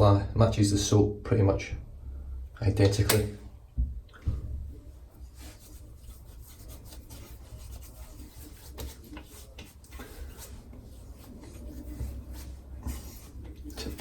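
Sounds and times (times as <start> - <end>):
hands rubbing balm on skin: 5.3 - 14.0.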